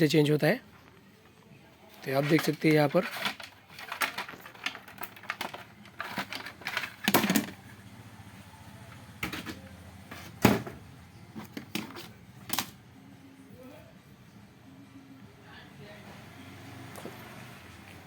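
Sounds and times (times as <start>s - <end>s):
hand tools clicking and knocking: 2.0s - 7.6s.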